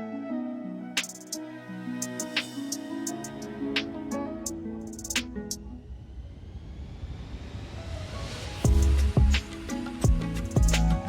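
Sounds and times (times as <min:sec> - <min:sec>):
plucked-string melody: 0:00.0 - 0:05.8, 0:08.7 - 0:11.0.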